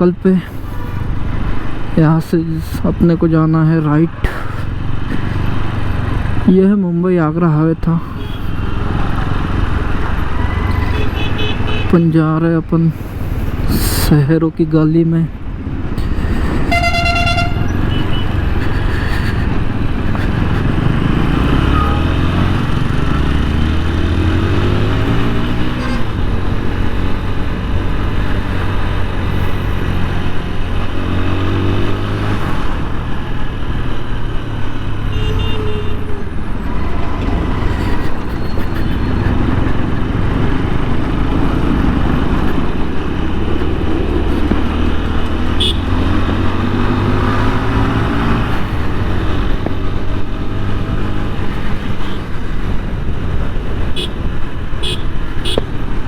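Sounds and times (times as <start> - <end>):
motorcycle engine accelerating: 15.6 - 35.0, 36.4 - 56.0.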